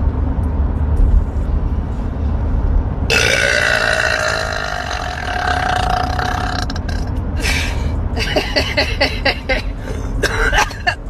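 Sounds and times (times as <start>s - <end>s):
low rumble: 0.0s - 8.9s
woman burping: 3.1s - 7.1s.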